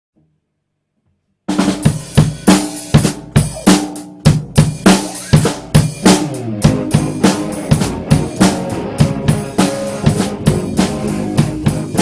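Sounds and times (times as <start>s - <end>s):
rock band drum beat: 1.5s - 12.0s
bass and guitar notes: 6.0s - 12.0s.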